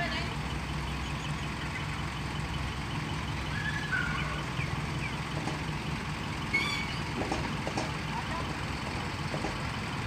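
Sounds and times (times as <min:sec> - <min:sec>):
diesel engine idling: 0:00.0 - 0:10.0.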